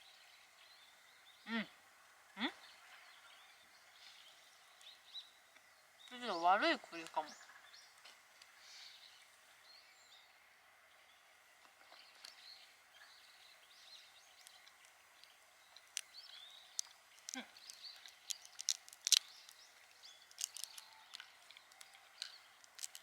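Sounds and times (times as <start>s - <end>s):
faint bird chirps: 0.0s - 23.0s
sharp irregular clicks and cracks: 14.4s - 23.0s.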